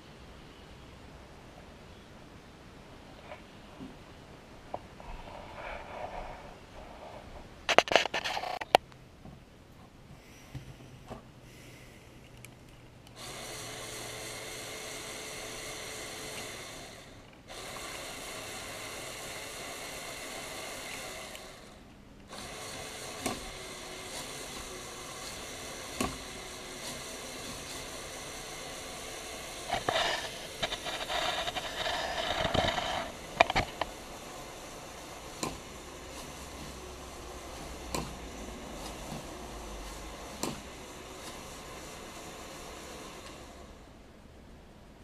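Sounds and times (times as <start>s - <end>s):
toy electric motors whirring: 13.2s - 43.9s.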